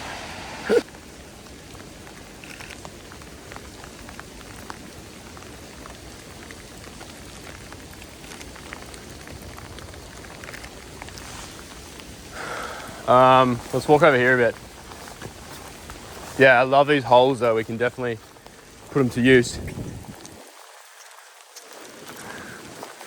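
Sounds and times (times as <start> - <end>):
steady rain falling: 0.0 - 23.0
raindrops ticking: 0.6 - 23.0.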